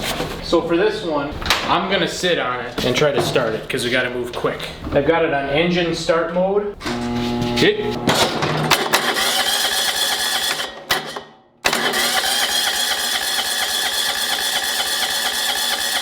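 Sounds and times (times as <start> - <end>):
electric starter cranking engine: 6.8 - 16.0.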